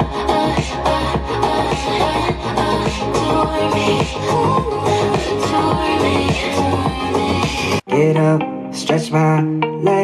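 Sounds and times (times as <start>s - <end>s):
electronic pop music: 0.0s - 10.0s.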